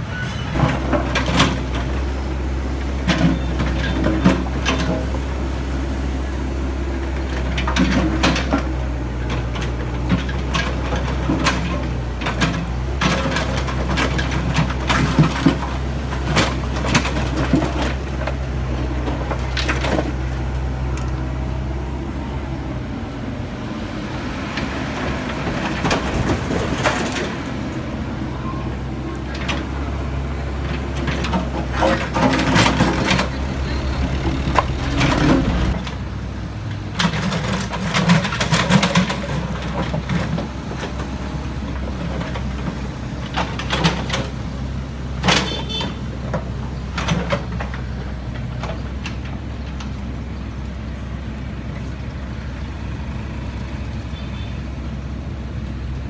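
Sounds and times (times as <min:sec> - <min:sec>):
diesel engines running: 0:00.0 - 0:56.0
metal clanks and knocks: 0:30.7 - 0:33.4.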